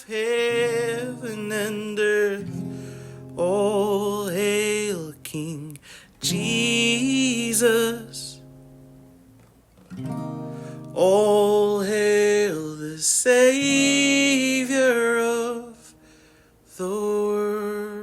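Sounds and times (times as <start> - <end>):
acoustic guitar: 0.0 - 18.0
person singing long notes: 3.3 - 8.4.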